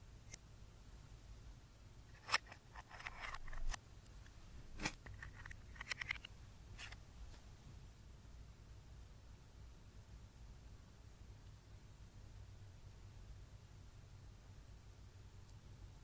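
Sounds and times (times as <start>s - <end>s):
small sharp clicks: 2.1s - 7.0s.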